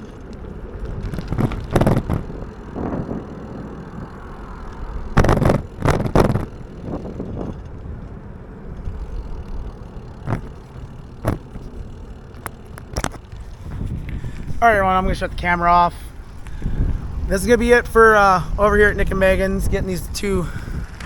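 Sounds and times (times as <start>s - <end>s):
bike knocks and clatters: 0.0s - 14.5s
bike tyres rolling: 0.0s - 21.0s.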